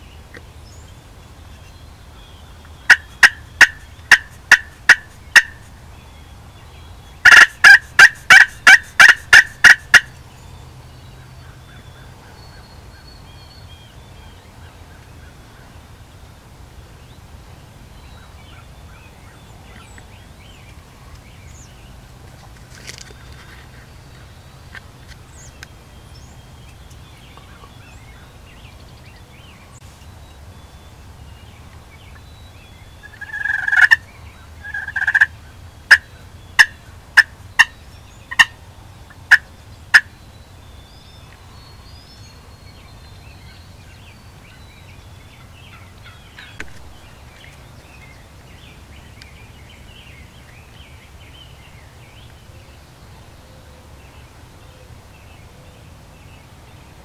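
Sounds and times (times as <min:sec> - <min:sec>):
turkey gobbling: 0:02.9 - 0:05.6, 0:07.2 - 0:10.1, 0:33.1 - 0:34.0, 0:34.6 - 0:35.3, 0:35.9 - 0:37.7, 0:38.3 - 0:38.6, 0:39.3 - 0:40.1
sharp clucking notes: 0:02.9 - 0:05.7, 0:07.2 - 0:10.1.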